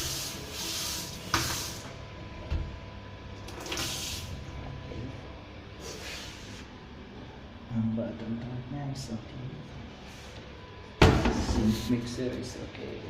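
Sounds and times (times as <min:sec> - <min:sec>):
tap water running in spurts: 0:00.0 - 0:02.0, 0:03.4 - 0:04.5.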